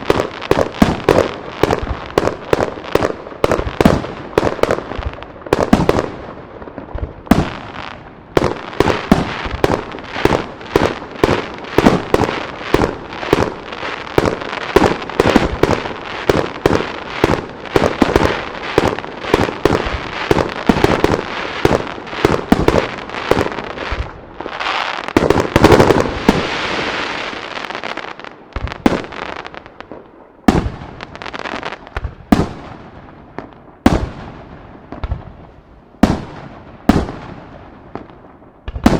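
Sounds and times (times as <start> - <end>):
firework crackling hiss: 7.0 - 29.6.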